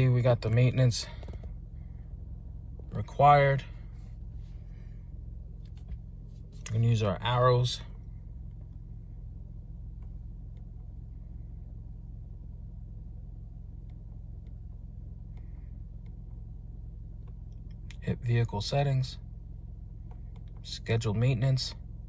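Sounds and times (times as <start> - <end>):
car engine idling: 0.0 - 22.0
steering wheel button clicks: 20.0 - 20.7.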